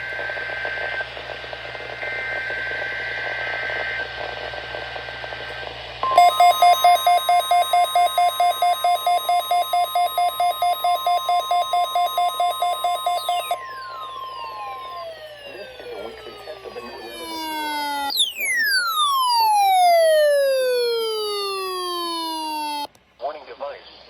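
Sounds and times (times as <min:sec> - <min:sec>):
rapid alarm beeps: 0:06.0 - 0:22.9
steady warning alarm tone: 0:06.0 - 0:22.9.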